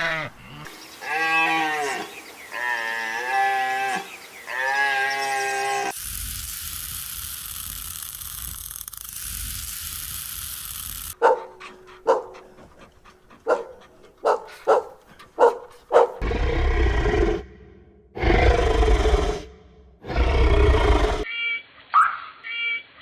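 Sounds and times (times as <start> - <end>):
steady hiss: 5.9 - 11.2
dog barking: 11.2 - 12.6, 13.4 - 16.2.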